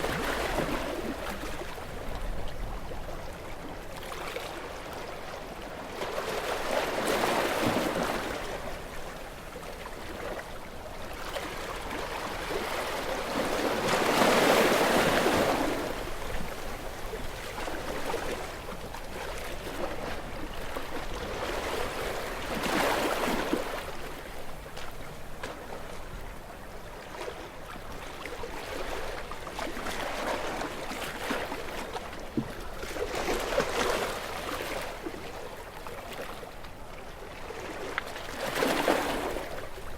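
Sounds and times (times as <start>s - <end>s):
sea waves breaking against rocks: 37.5s - 39.9s.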